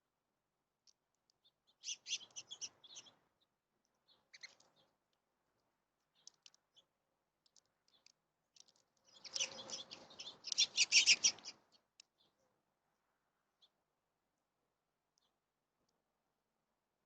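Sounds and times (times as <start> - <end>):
faint bird chirps: 1.3 - 5.0, 7.8 - 12.6
wings fluttering: 8.6 - 11.6.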